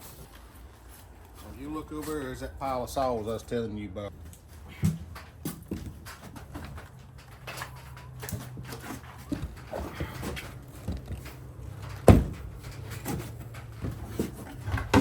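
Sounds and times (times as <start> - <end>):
objects knocking and clattering: 4.2 - 15.0.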